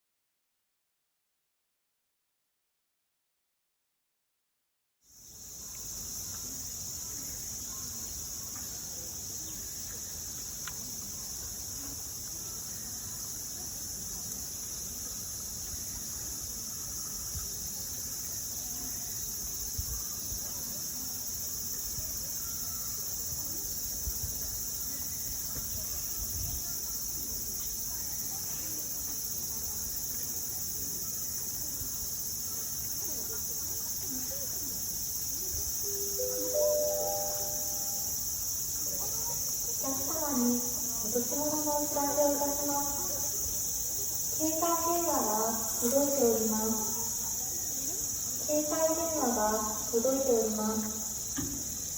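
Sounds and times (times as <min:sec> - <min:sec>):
insects chorus: 0:05.0 - 0:51.9.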